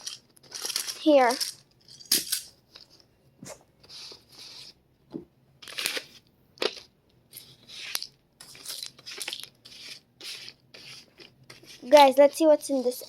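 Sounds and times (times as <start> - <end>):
toys rustling and crinkling: 0.0 - 2.1, 5.6 - 13.0.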